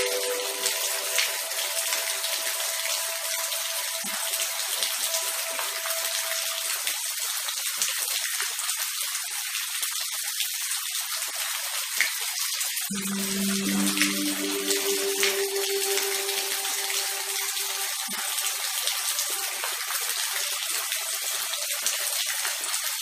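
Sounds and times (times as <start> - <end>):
rain hiss: 0.0 - 8.2, 12.8 - 23.0
faint steady tone: 12.9 - 19.9.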